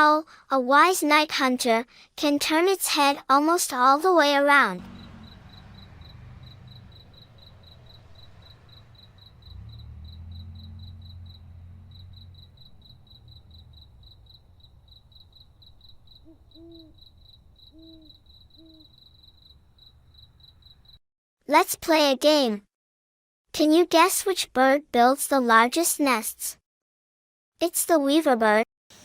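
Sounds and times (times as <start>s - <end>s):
crickets chirping: 4.8s - 21.0s
owl hooting: 15.0s - 19.5s.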